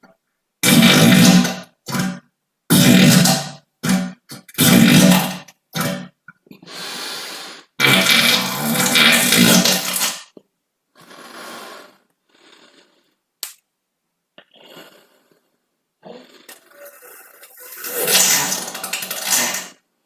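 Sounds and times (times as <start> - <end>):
farts: 0.6 - 6.2, 7.8 - 10.4, 14.4 - 19.8.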